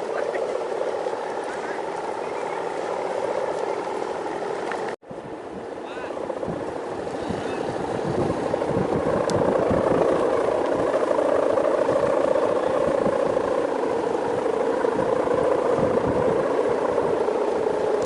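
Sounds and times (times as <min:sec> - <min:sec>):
kite hummer drone: 0:00.0 - 0:18.0
wind buffeting microphone: 0:00.0 - 0:18.0.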